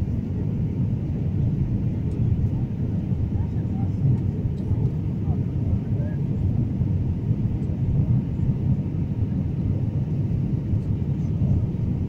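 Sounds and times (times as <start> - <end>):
airliner cabin rumble: 0.0 - 12.0.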